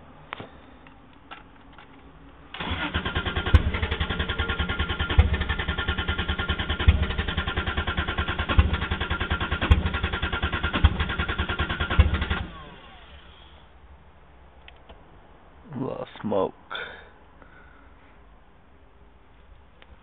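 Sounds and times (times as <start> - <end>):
engine starter cranking: 2.5 - 13.6.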